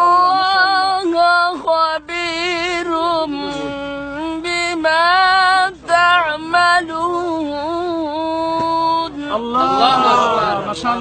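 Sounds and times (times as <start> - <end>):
person reciting in melodic chant: 0.0 - 11.0.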